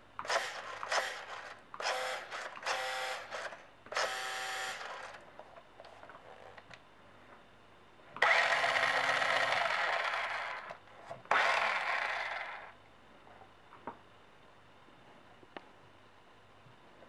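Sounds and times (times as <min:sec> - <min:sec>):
toy car motors whirring: 0:00.2 - 0:05.2, 0:08.2 - 0:12.7.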